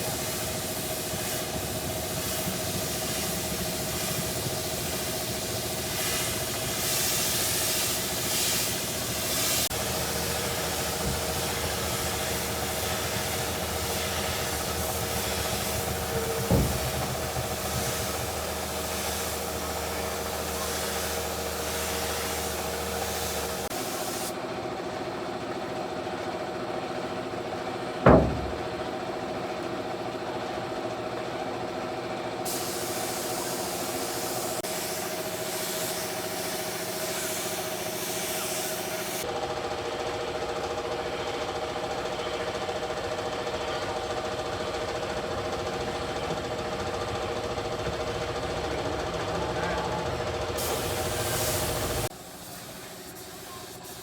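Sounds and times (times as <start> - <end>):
engine or motor humming: 0.0 - 23.8, 39.2 - 52.1
sharp knocks: 15.5 - 17.9, 28.1 - 28.9.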